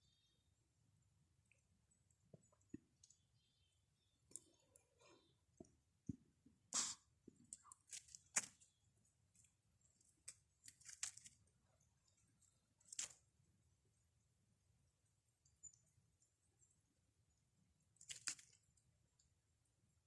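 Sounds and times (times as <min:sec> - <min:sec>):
faint clicks and rustles: 0:07.2 - 0:13.6.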